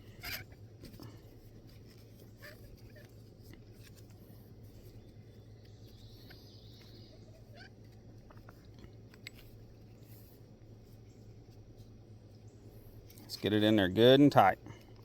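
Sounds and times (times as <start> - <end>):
steady low hum: 0.0 - 15.0
faint clicks and creaks of screwing: 7.5 - 13.4.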